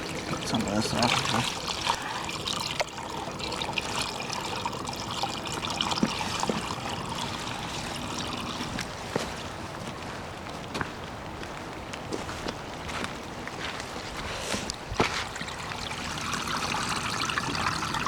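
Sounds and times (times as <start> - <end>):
water trickling and splashing: 0.0 - 11.2, 14.4 - 18.0.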